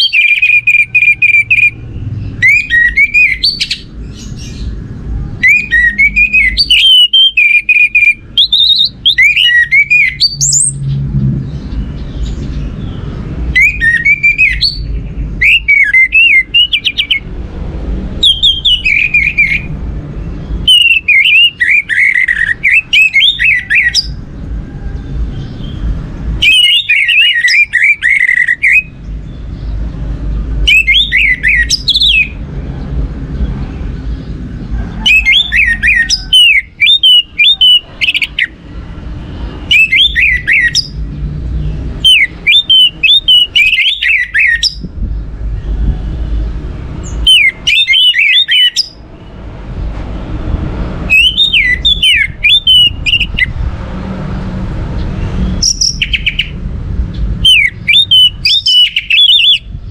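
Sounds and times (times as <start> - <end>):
thrush singing whistled phrases: 0.0 - 3.9, 5.4 - 10.8, 13.5 - 17.3, 18.2 - 19.8, 20.6 - 24.2, 26.4 - 29.0, 30.6 - 32.4, 35.0 - 38.6, 39.6 - 41.0, 42.0 - 44.8, 47.0 - 49.0, 51.0 - 53.5, 55.6 - 56.6, 57.4 - 59.7
low rumble: 10.3 - 13.5.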